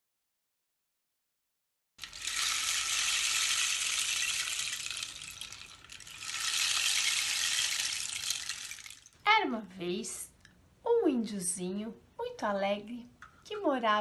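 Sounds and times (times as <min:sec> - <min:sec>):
rain stick trickling: 0:02.0 - 0:09.2.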